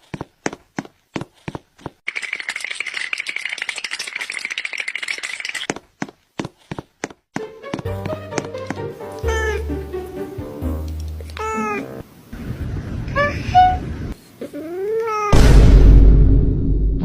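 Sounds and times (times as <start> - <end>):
fast rattling: 2.1 - 5.7.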